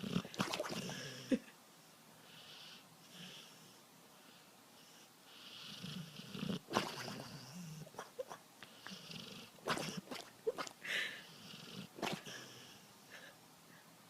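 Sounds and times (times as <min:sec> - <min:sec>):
animal snoring: 0:00.0 - 0:01.4, 0:05.3 - 0:07.9, 0:08.8 - 0:10.0, 0:11.3 - 0:12.9.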